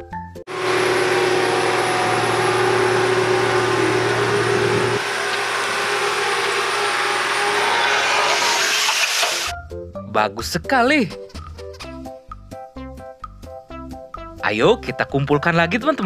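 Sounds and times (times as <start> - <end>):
low machine tone: 0.5 - 9.5
machine rushing hum: 0.5 - 9.5.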